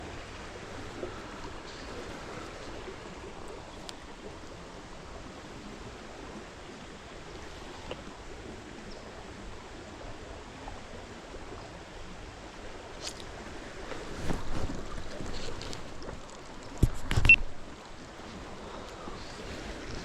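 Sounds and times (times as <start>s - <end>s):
stream water flowing: 0.0s - 20.0s
faint clicks: 3.5s - 4.5s.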